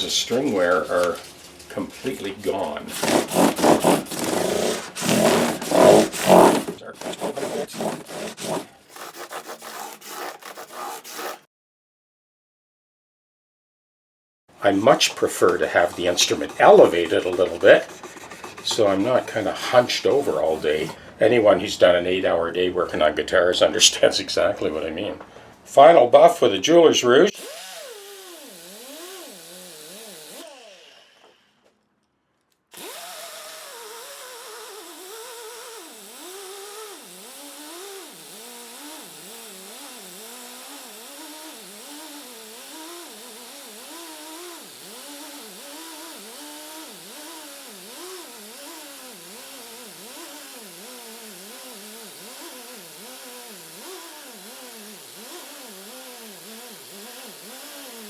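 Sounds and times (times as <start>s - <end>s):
small power tool motor whining: 3.0s - 11.0s, 27.4s - 31.6s, 32.7s - 58.0s.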